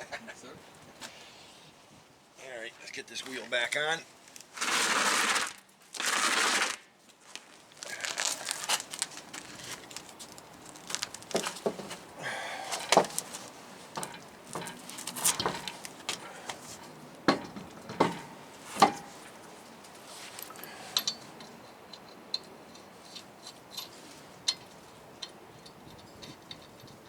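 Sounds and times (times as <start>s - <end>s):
loud rustling crinkling: 3.2s - 12.1s
metal tools clinking: 20.2s - 27.0s.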